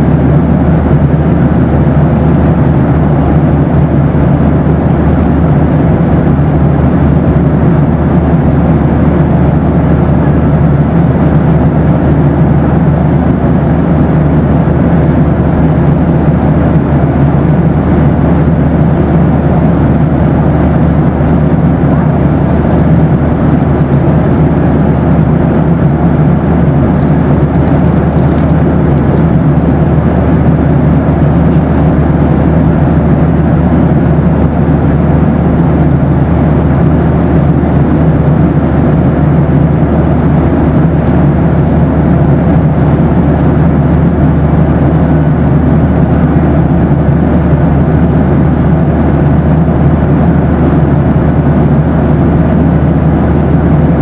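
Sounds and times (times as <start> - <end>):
airliner cabin engine rumble: 0.0 - 54.0
faint steady hum: 0.0 - 54.0.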